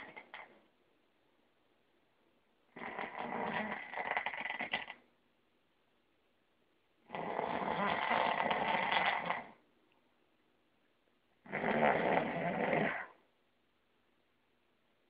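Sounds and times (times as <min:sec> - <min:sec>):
person snoring: 0:02.7 - 0:05.0, 0:07.0 - 0:09.6, 0:11.4 - 0:13.2.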